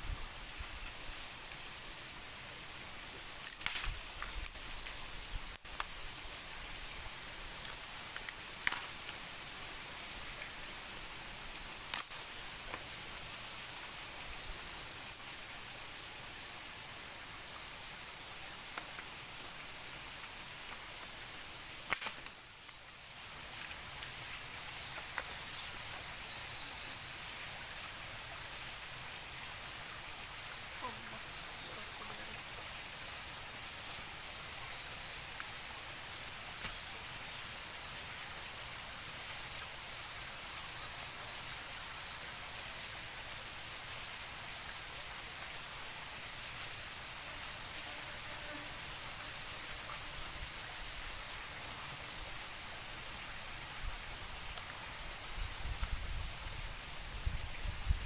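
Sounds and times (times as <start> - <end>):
high-pitched insect chorus: 0.0 - 58.0
faint ticks: 3.4 - 6.0, 7.6 - 9.2, 11.9 - 12.9.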